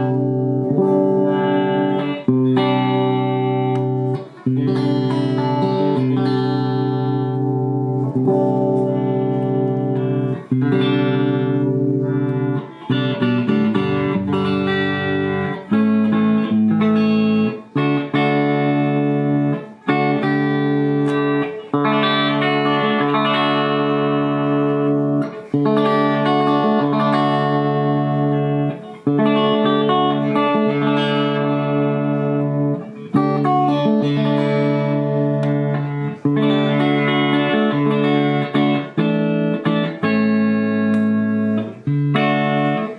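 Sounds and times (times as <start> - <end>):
electric guitar chords strummed: 0.0 - 42.9.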